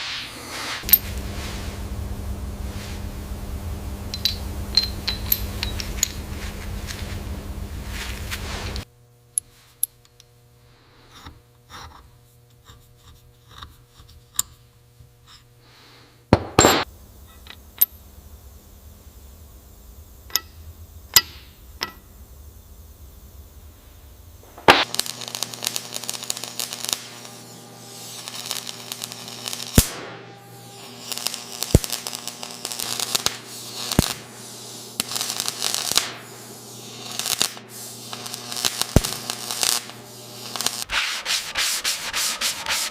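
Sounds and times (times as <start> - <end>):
low hum: 0.3 - 8.8, 16.4 - 26.0
rubbing and scraping: 4.4 - 8.8, 40.9 - 42.9.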